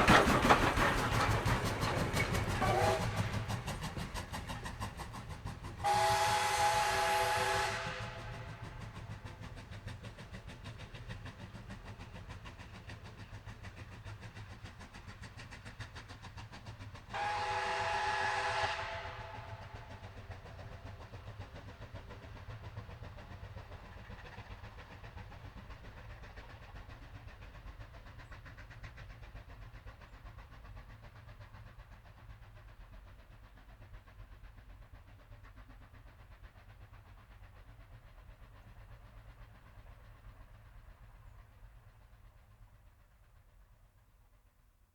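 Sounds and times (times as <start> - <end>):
train rumbling: 0.0 - 44.4
train whistle chord: 2.6 - 3.4, 5.8 - 8.6, 17.1 - 20.0.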